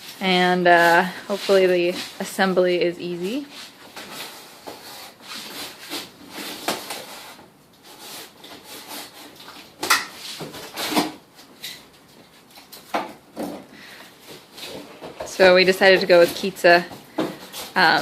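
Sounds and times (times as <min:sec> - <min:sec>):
cardboard scraping and rubbing: 0:00.0 - 0:02.6, 0:03.2 - 0:11.2.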